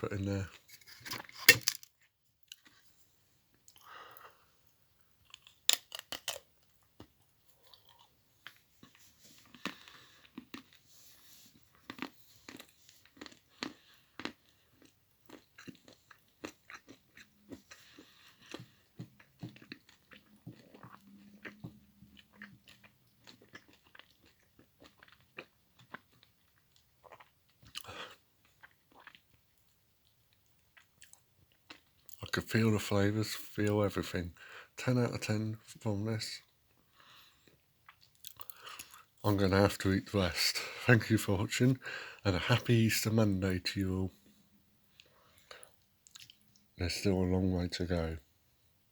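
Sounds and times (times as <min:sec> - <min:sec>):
chewing and crunching chocolate: 0:00.3 - 0:04.5, 0:05.1 - 0:32.6, 0:35.8 - 0:43.4, 0:44.9 - 0:46.7.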